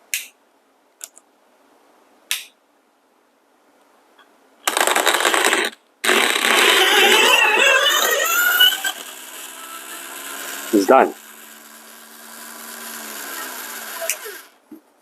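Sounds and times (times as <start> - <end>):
sharp clicks: 4.7 - 14.6
coffee grinder grinding beans: 6.1 - 14.6.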